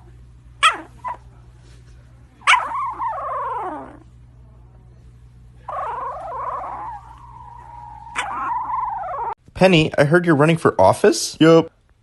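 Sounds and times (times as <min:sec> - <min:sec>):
pet animal calling: 0:05.7 - 0:09.4.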